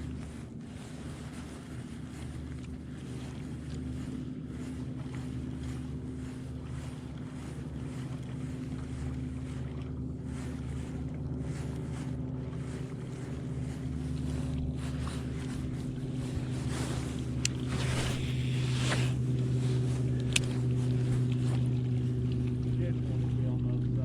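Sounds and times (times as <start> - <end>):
boat motor humming: 0.0 - 24.0
wind buffeting microphone: 10.4 - 23.3.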